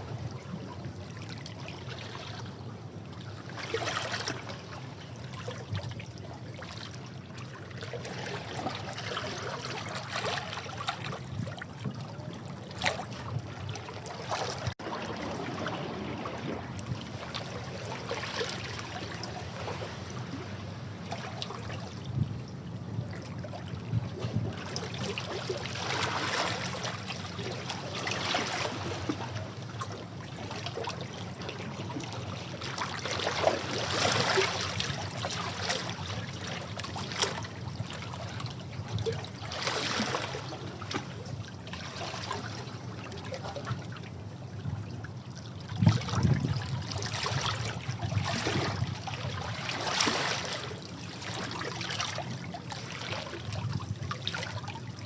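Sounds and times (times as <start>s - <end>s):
low rumble of surf: 0.0s - 55.0s
sea waves washing over rocks: 14.3s - 20.6s, 25.6s - 29.4s.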